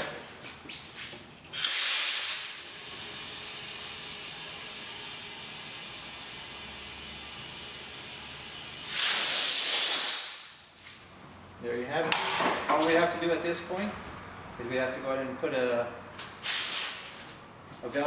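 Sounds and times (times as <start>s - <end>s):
compressed air hissing into tire: 1.5s - 10.4s, 16.4s - 17.1s.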